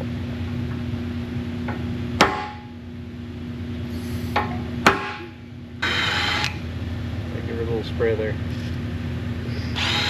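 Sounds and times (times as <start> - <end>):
hammer striking punch on steel: 2.2 - 2.7, 4.4 - 5.4.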